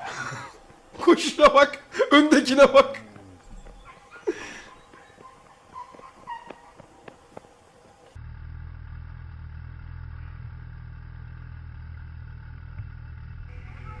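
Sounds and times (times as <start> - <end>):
low rumble: 8.2 - 14.0.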